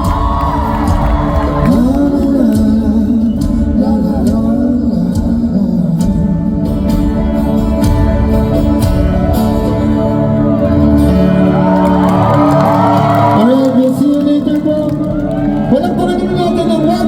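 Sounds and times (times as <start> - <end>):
person singing: 0.0 - 6.8
live band playing: 0.0 - 17.0.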